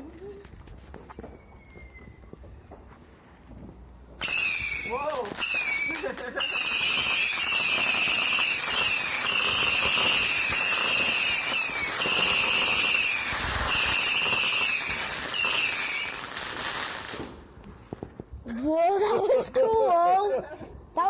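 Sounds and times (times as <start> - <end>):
firework whistling shots: 1.1 - 3.0, 4.2 - 17.4.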